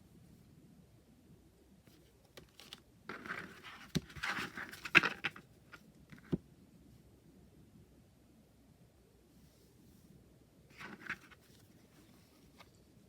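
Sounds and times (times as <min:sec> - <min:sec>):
cards rustling and sliding: 0:01.9 - 0:05.4, 0:10.8 - 0:12.8.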